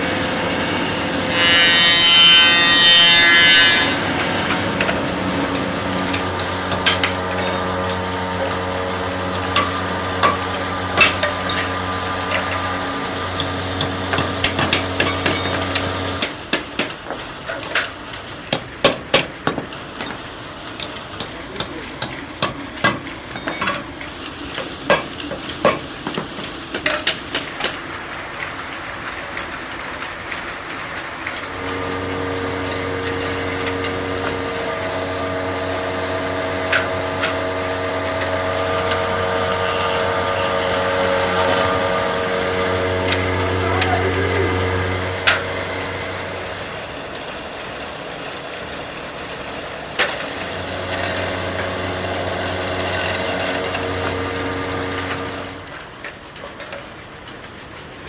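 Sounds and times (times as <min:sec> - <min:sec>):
electric motor humming: 0:00.0 - 0:16.3, 0:31.5 - 0:55.7.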